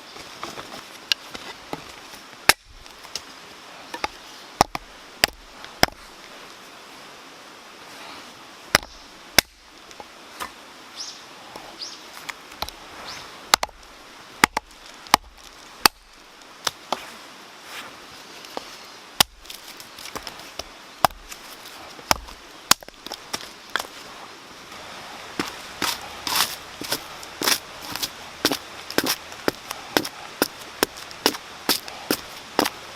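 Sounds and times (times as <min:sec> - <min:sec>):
steady background hiss: 0:00.0 - 0:32.9
wood snapping and cracking: 0:02.5 - 0:03.2, 0:19.2 - 0:23.9.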